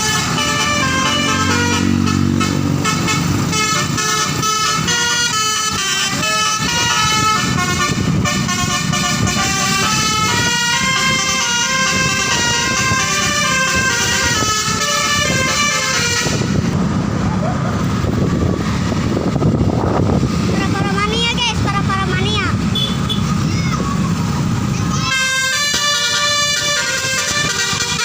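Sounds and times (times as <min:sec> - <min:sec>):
bus horn playing a fast tune: 0:00.0 - 0:16.8, 0:22.7 - 0:23.4, 0:25.0 - 0:28.0
bus engine rumble: 0:00.0 - 0:28.0.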